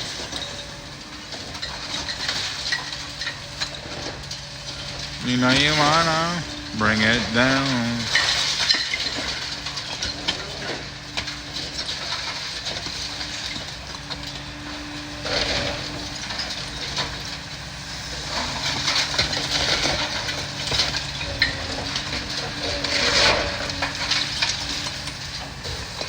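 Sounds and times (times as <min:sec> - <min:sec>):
excavator diesel engine humming: 0:04.6 - 0:08.3.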